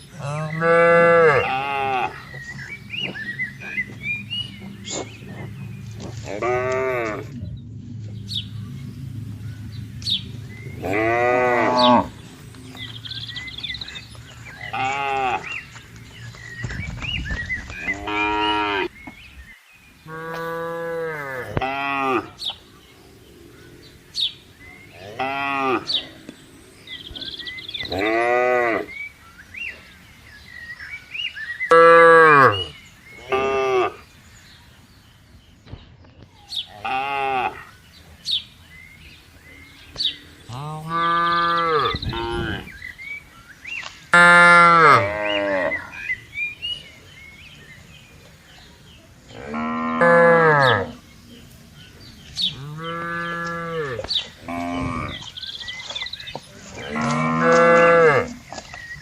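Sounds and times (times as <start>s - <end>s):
cows mooing: 0.1s - 7.4s, 9.2s - 15.6s, 17.8s - 18.9s, 20.1s - 22.5s, 24.7s - 29.0s, 31.7s - 34.0s, 36.7s - 37.7s, 40.0s - 42.8s, 44.1s - 46.2s, 49.3s - 51.0s, 52.4s - 55.4s, 56.6s - 58.7s.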